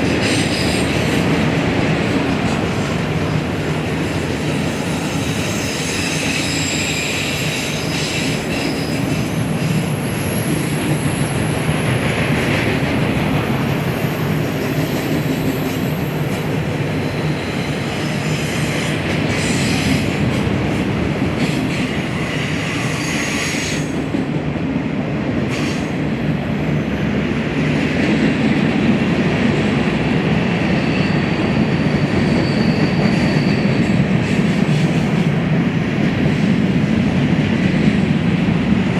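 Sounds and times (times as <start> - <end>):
freight train rumbling on rails: 0.0 - 38.9
high wheel squeal: 4.5 - 11.7, 30.7 - 34.0.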